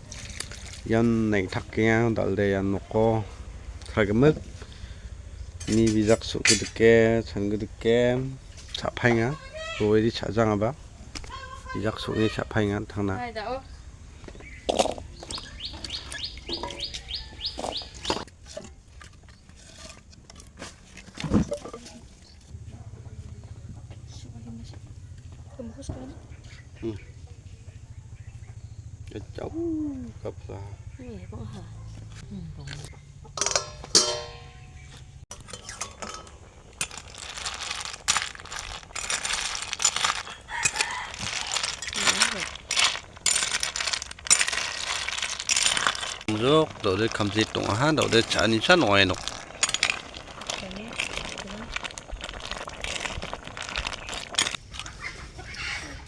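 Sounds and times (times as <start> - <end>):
snail shells clinking and scraping: 0.0 - 3.0, 3.7 - 7.7, 14.4 - 22.4, 33.4 - 55.7
bird chirping: 13.6 - 18.3.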